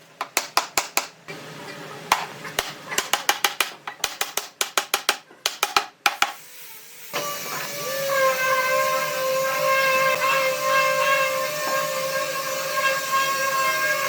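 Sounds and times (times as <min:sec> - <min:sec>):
power tool whining: 0:06.9 - 0:14.0.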